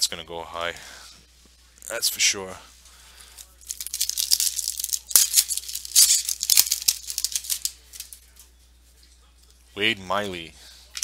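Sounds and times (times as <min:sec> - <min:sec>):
foil wrapper crinkling and tearing: 0:03.4 - 0:08.2.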